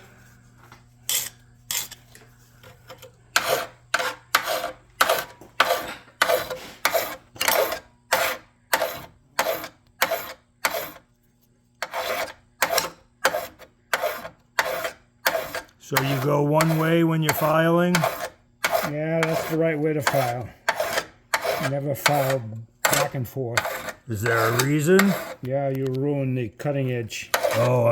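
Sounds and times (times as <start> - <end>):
hand file cutting metal: 3.3 - 11.0, 11.8 - 25.5, 27.2 - 27.9.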